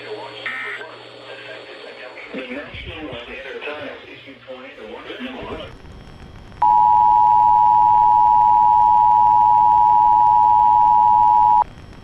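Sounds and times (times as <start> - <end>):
two-tone alert signal: 6.6 - 11.6.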